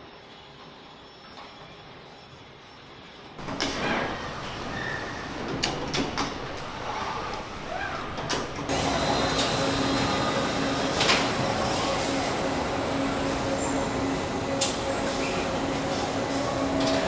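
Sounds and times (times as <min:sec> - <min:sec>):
machinery clanks and knocks: 0:03.4 - 0:10.1.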